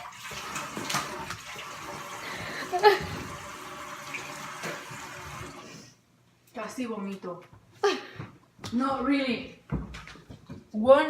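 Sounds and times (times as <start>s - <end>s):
tap water running: 0.0s - 6.0s.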